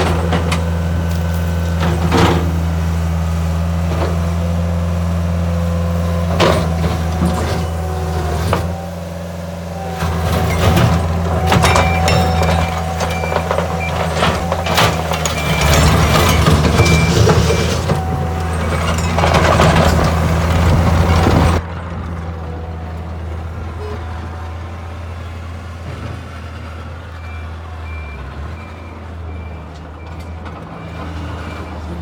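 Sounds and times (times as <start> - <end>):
diesel engine running: 0.0 - 32.0
backup alarm beeping: 9.8 - 19.0.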